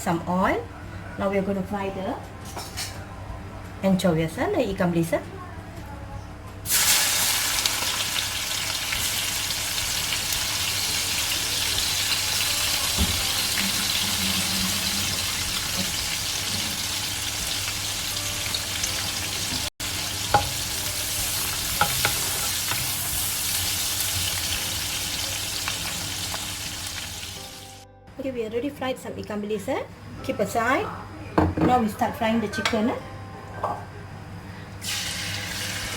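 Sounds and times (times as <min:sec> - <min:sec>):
fish sizzling in hot oil: 0:06.7 - 0:27.6, 0:34.8 - 0:35.9.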